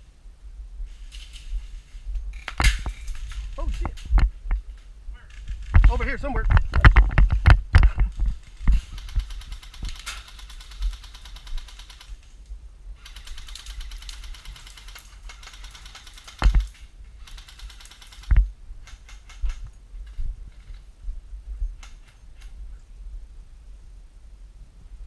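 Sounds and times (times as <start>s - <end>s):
airsoft gun rapid firing: 8.8s - 12.2s, 13.0s - 18.4s.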